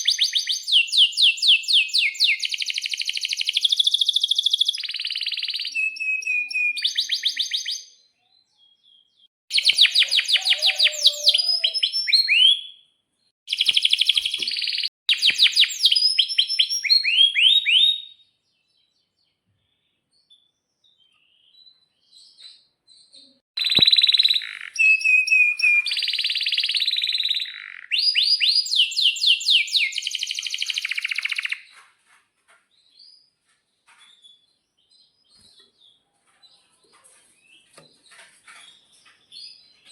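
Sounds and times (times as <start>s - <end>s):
canary singing trills: 0.0s - 12.8s, 20.9s - 31.8s.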